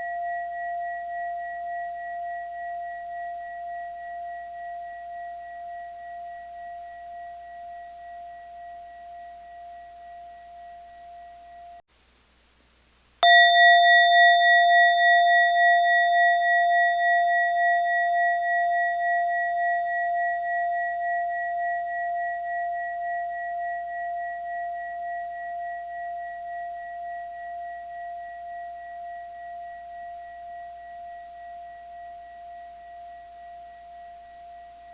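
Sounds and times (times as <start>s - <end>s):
bell ringing: 13.2s - 17.0s.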